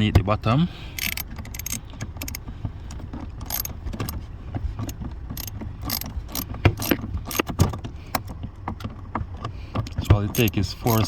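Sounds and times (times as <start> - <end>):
hand tool clicking on plastic trim: 1.0 - 2.4, 3.4 - 4.2, 5.4 - 7.5, 10.3 - 11.0.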